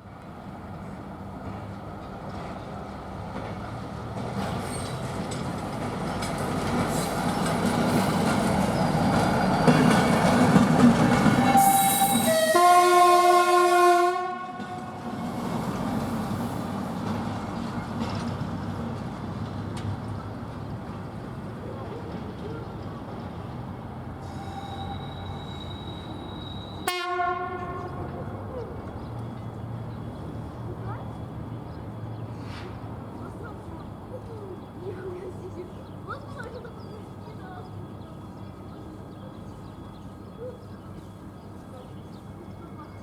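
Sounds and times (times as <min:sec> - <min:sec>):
railcar running noise: 0:00.0 - 0:43.0
railcar horn: 0:11.3 - 0:15.3, 0:24.2 - 0:28.2.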